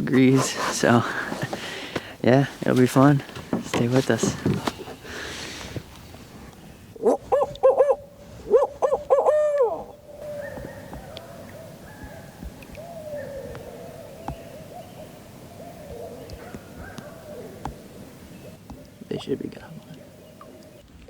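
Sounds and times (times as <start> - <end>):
owl hooting: 6.9 - 19.2.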